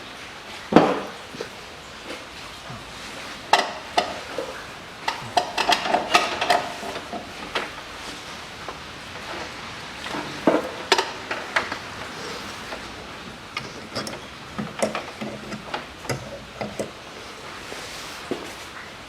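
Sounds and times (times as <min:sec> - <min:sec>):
metal tools clinking: 0:13.5 - 0:17.0.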